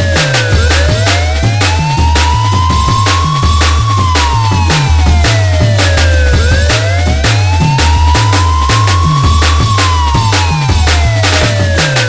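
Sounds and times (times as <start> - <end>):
deep repeating bass line: 0.0 - 12.0
electronic dance music: 0.0 - 12.0
sharp percussion hits: 0.0 - 12.0.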